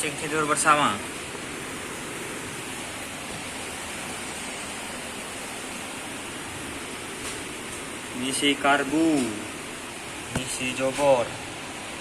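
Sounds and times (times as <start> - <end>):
steady hiss: 0.0 - 12.0.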